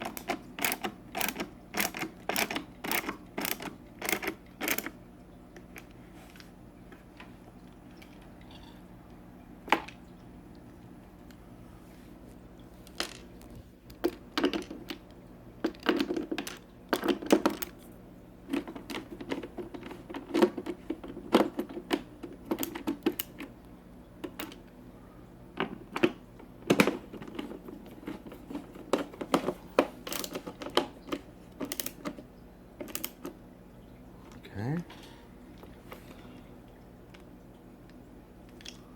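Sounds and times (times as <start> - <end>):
clicks and taps of small parts: 25.6 - 32.2, 32.8 - 33.4.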